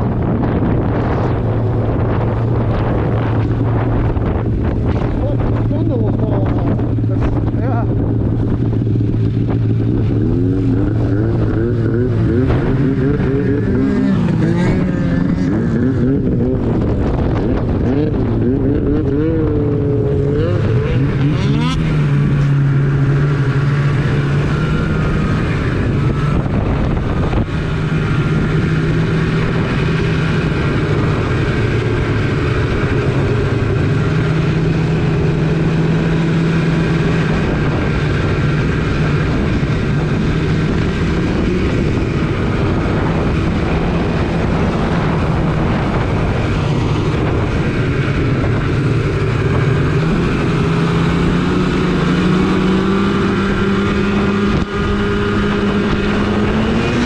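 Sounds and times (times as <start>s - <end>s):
snowmobile engine running: 0.0s - 57.0s.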